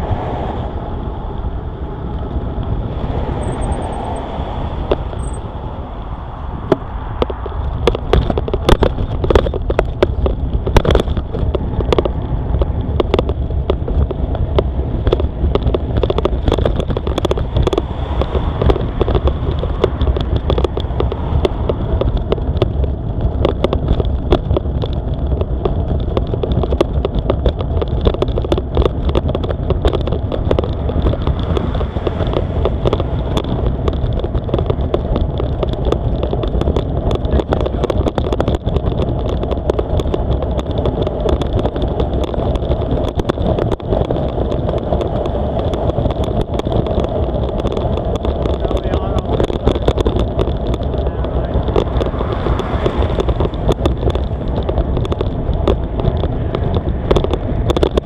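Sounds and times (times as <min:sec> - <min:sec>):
wind buffeting microphone: 0:00.0 - 0:58.0
bicycle clicks and rattles: 0:02.1 - 0:05.7, 0:06.5 - 0:58.0.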